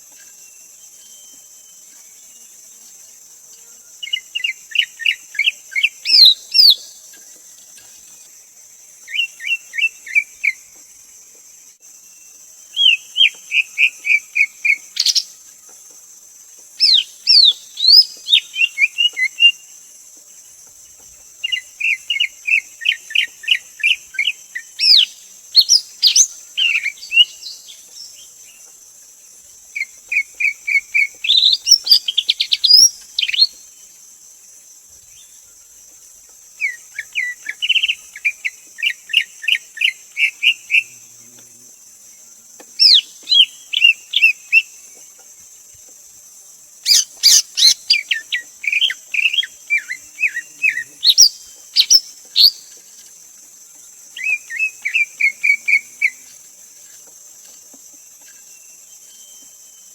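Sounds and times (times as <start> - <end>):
steady high hiss: 0.0 - 59.9
bird singing whistled notes: 0.2 - 2.4, 4.0 - 7.0, 12.1 - 15.4, 16.8 - 19.6, 21.4 - 28.3, 29.8 - 33.8, 42.8 - 44.7, 46.8 - 52.8, 54.1 - 56.3, 58.2 - 59.9.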